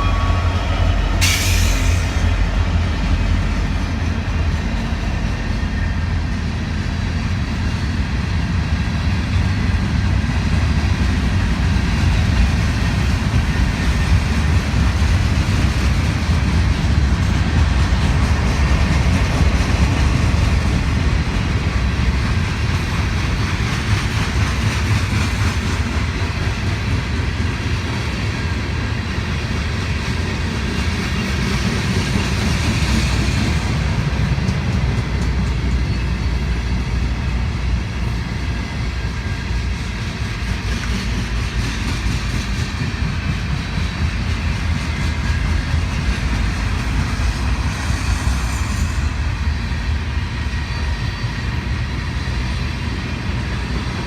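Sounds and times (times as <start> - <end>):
freight train passing: 0.0 - 54.0.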